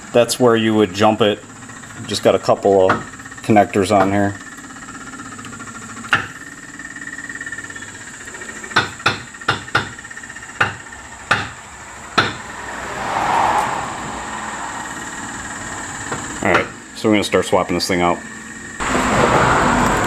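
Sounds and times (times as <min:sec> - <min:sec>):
steady low hum: 0:06.6 - 0:16.8
sharp knocks: 0:08.8 - 0:10.0, 0:10.6 - 0:12.4.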